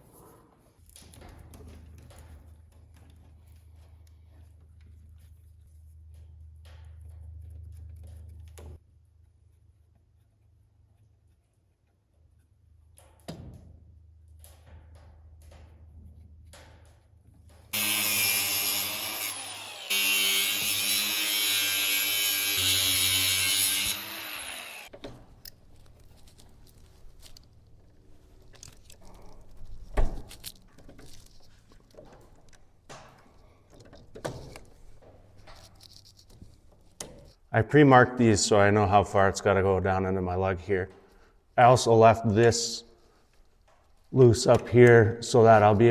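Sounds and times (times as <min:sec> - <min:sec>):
power tool motor running: 0:17.8 - 0:24.9.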